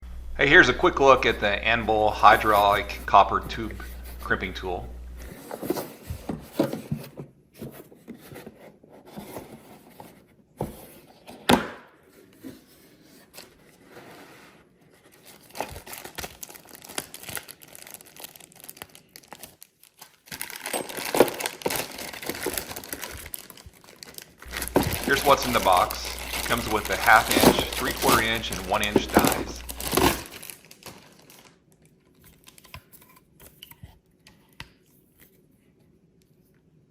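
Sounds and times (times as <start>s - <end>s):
packaging crinkling and tearing: 0.9s - 6.1s, 15.2s - 33.3s.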